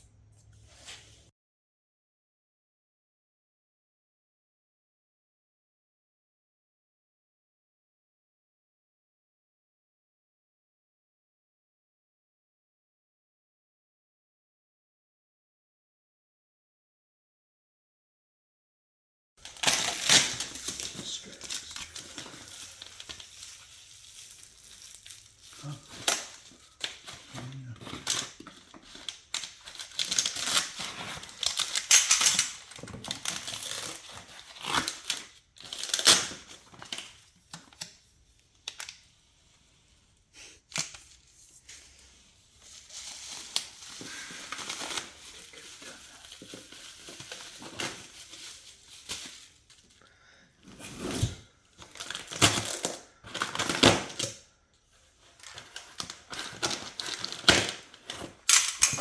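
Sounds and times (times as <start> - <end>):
plastic packaging crinkling: 19.4 - 39.1, 42.0 - 49.9, 55.2 - 59.0.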